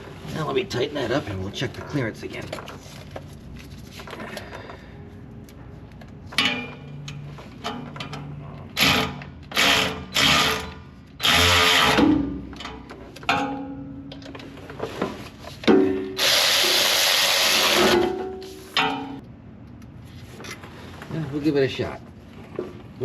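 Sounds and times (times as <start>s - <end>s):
power tool tightening a bolt: 8.8s - 12.0s, 16.2s - 18.0s.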